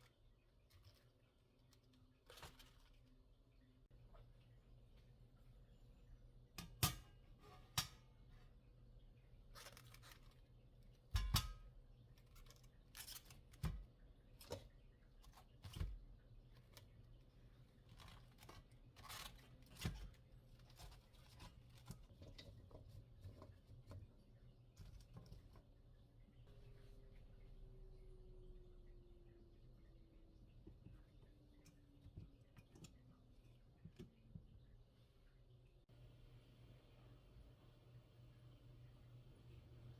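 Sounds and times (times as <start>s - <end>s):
rustling and scraping: 16.6s - 25.7s.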